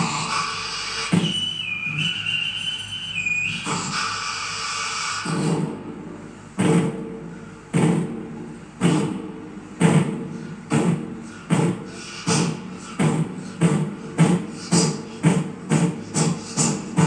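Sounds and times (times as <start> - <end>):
imitated steam locomotive chuffs: 0.0 - 17.0.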